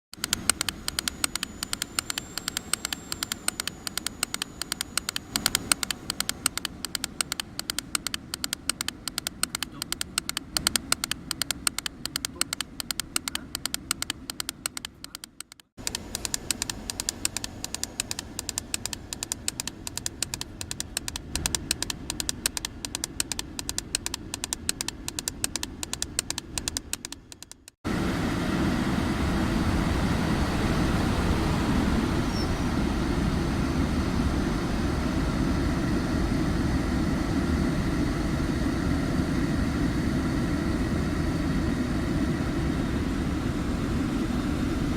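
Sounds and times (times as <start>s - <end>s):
air vent actuator clicking: 0.2s - 27.8s.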